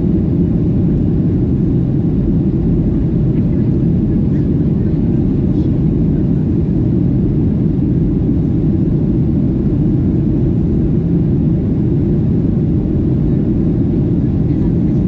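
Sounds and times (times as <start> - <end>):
airplane cabin engine rumble: 0.0 - 15.0.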